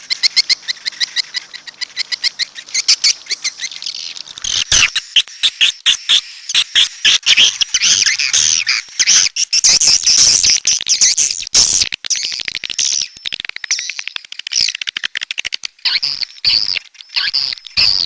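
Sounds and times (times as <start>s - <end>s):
swiftlets twittering and chirping: 0.0s - 18.0s.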